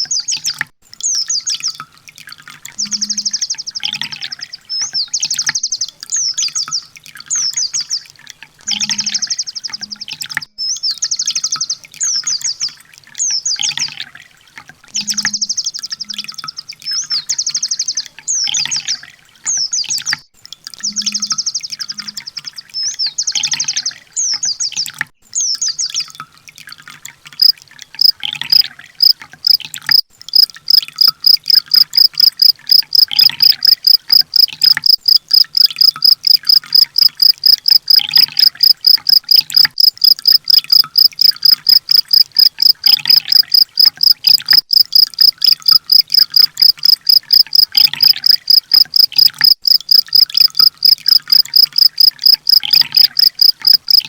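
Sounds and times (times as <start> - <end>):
high chirps: 29.9 - 54.0.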